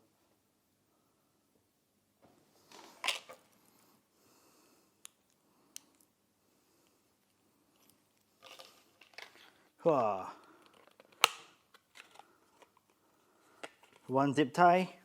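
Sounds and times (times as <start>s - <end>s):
plastic packaging rustling: 7.7s - 14.1s.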